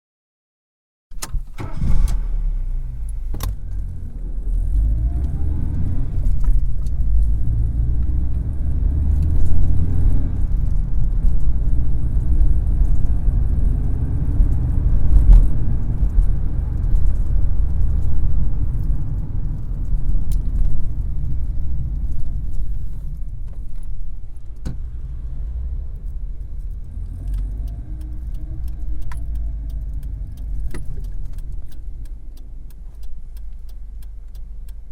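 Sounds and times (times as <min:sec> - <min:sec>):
car engine rumbling: 0:01.1 - 0:34.9
sharp clicks: 0:26.0 - 0:34.9.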